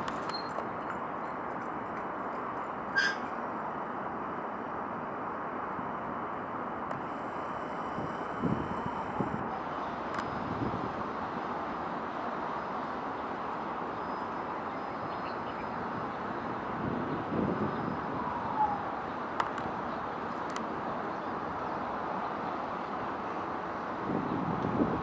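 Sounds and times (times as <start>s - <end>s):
outdoor background noise: 0.0s - 25.0s
falling whistle: 3.0s - 3.3s
sharp clicks: 19.4s - 19.7s.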